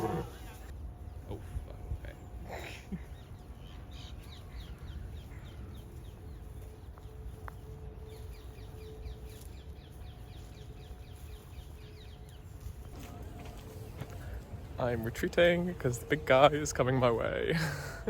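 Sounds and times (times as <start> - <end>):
faint steady drone: 0.0 - 18.0
wind rumble on microphone: 0.6 - 14.8
bird chirping: 1.0 - 17.3.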